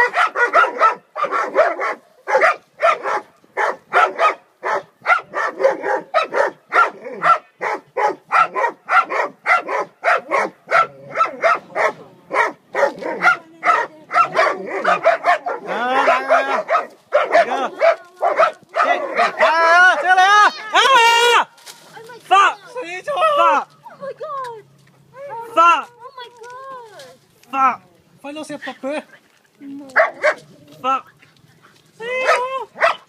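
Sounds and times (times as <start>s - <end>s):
dogs barking rapidly: 0.0s - 20.1s, 30.0s - 30.5s, 32.2s - 33.0s.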